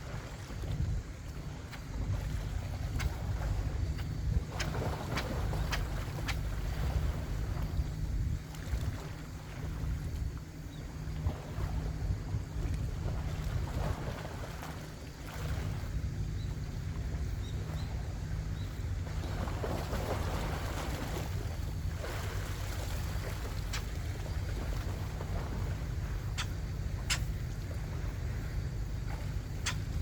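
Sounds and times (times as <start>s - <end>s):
wind buffeting microphone: 0.0s - 14.6s
sea washing: 0.0s - 16.2s, 16.8s - 30.0s.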